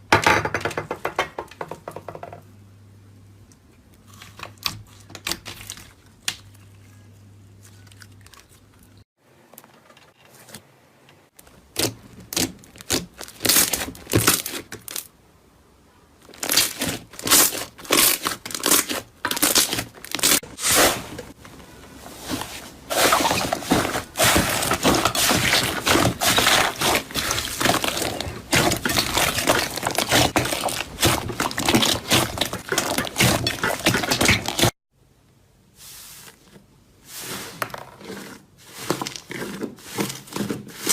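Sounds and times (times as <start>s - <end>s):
slime crackling and popping: 11.8s - 15.1s, 16.3s - 20.4s, 23.0s - 34.7s.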